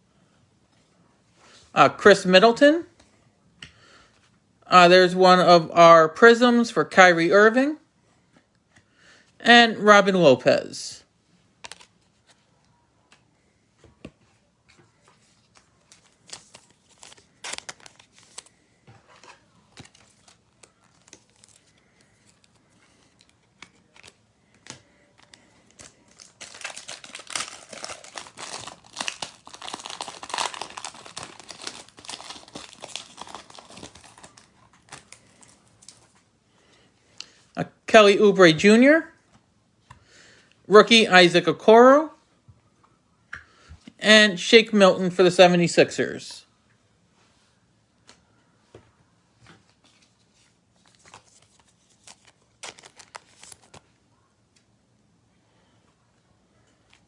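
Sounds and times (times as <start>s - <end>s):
foil wrapper crinkling: 15.4s - 18.6s, 19.2s - 36.1s, 50.8s - 53.9s.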